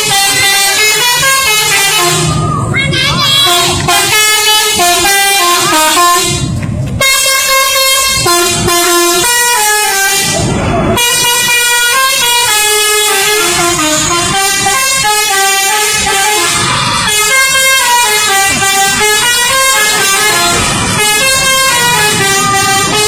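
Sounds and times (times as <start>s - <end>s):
musical bus air horn playing a tune: 0.0s - 2.4s, 3.2s - 23.0s.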